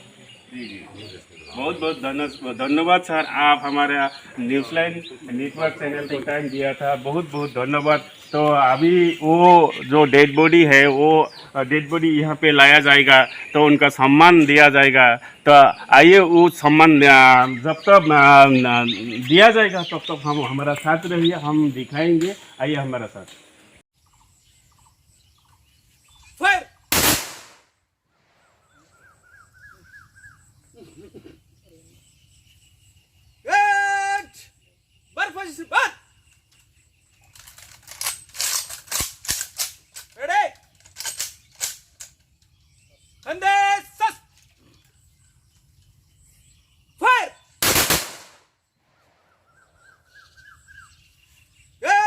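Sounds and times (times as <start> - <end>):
rifle volley: 26.9 - 27.7, 47.6 - 48.5.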